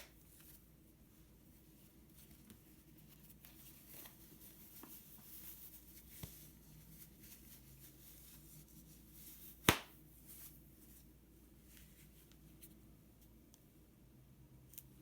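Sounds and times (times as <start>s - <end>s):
sharp loud snap: 9.6s - 9.9s.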